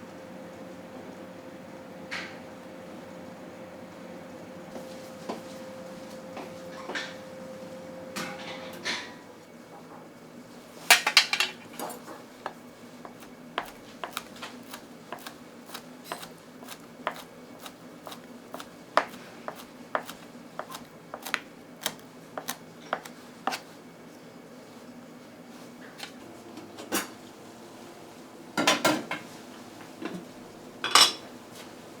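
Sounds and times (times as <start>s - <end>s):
kitchen utensils clicking and knocking: 10.9s - 12.0s.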